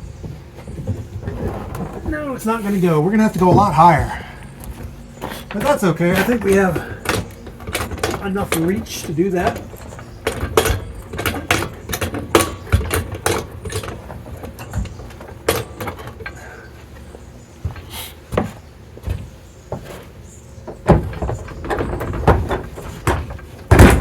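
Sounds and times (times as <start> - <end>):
floor jack clanking: 0.0 - 24.0.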